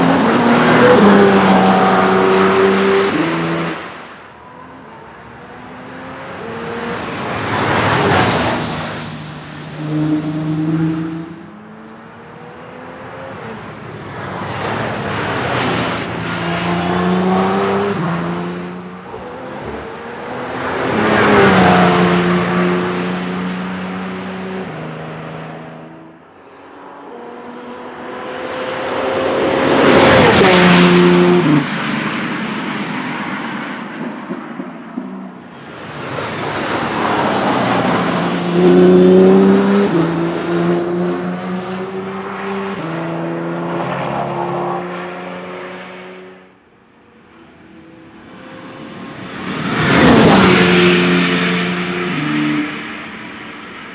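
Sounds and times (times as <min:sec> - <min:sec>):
racing car passing by: 0:00.0 - 0:53.9.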